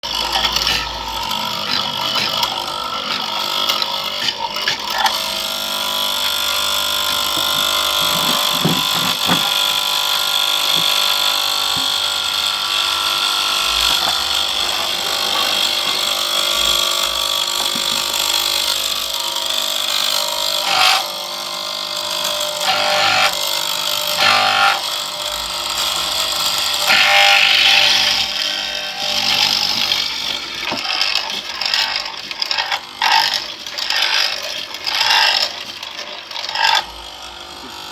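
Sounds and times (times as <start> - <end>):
electric chisel machine cutting wood: 0.0 - 37.9.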